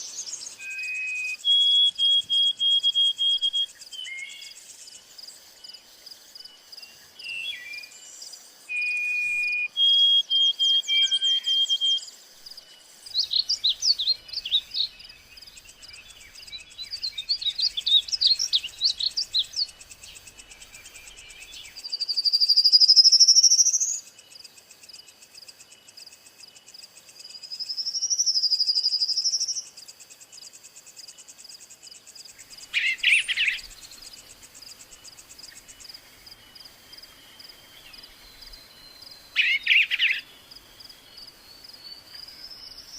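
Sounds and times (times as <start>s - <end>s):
high insect drone: 12.0s - 42.9s
birds calling: 13.0s - 21.8s, 32.4s - 42.9s.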